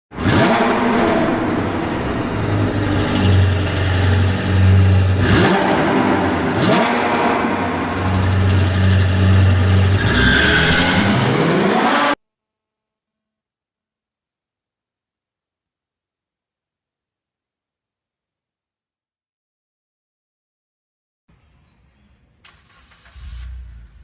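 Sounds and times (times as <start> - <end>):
car engine revving: 0.1 - 12.2.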